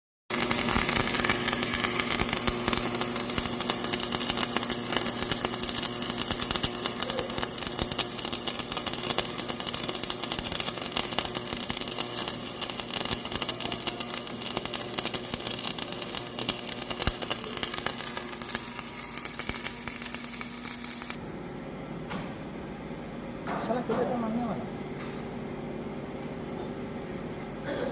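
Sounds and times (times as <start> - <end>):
welding arc crackling: 0.3 - 21.2.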